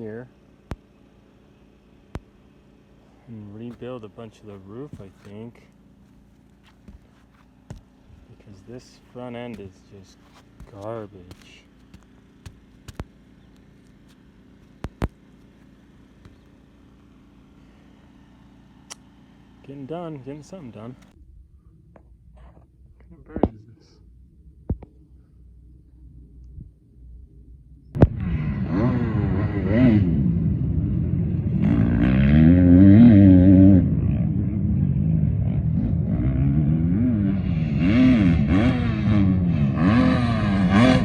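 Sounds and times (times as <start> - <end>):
low steady hum: 0.0 - 38.5
engine revving: 2.0 - 21.2, 28.0 - 41.0.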